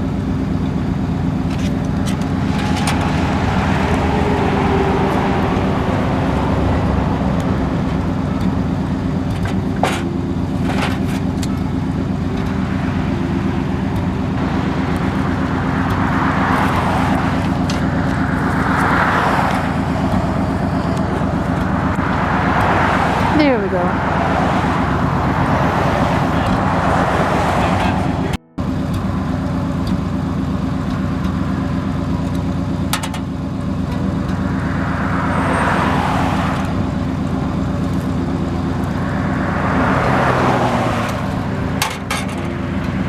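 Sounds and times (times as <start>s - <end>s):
passing road traffic: 0.0s - 43.0s
vehicle engine idling: 0.0s - 43.0s.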